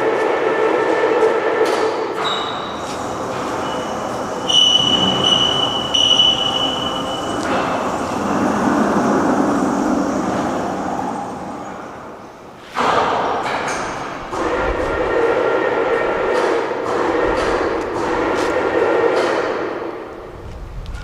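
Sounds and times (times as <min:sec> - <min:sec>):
machinery running: 0:01.2 - 0:12.6
high-pitched squeal: 0:02.2 - 0:12.1.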